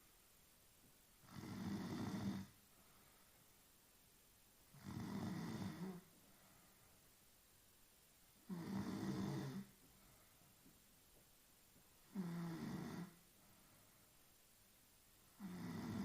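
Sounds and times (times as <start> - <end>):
woman snoring: 1.2 - 2.6, 4.8 - 6.1, 8.5 - 9.7, 12.1 - 13.2, 15.4 - 16.0.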